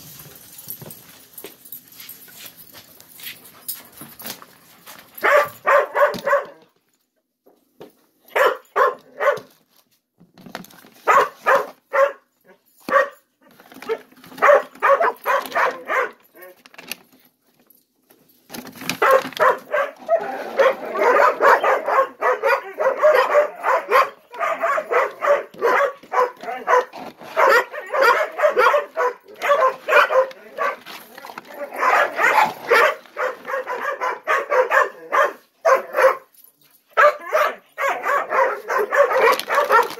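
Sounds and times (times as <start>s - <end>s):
puppies barking and yipping: 5.1s - 6.6s, 8.3s - 9.5s, 11.1s - 12.2s, 13.9s - 16.4s, 18.9s - 39.9s.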